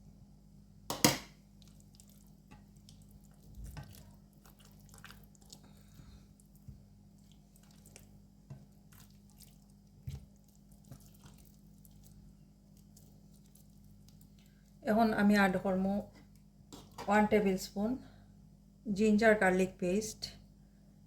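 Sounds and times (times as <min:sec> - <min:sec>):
hands rubbing butter into meat: 0:01.6 - 0:14.5.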